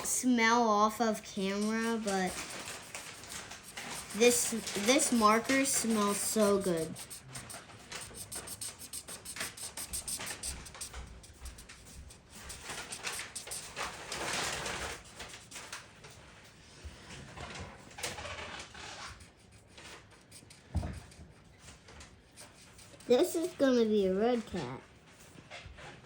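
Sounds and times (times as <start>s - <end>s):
marker scratching on paper: 0.0s - 15.8s, 18.9s - 21.4s, 22.2s - 24.2s.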